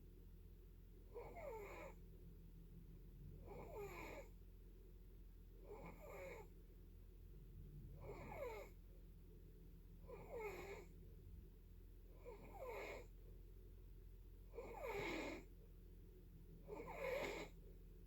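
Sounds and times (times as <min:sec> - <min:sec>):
faint snoring: 0:01.1 - 0:02.0, 0:03.4 - 0:04.3, 0:05.6 - 0:06.5, 0:07.9 - 0:08.8, 0:10.0 - 0:10.9, 0:12.2 - 0:13.1, 0:14.5 - 0:15.5, 0:16.6 - 0:17.6.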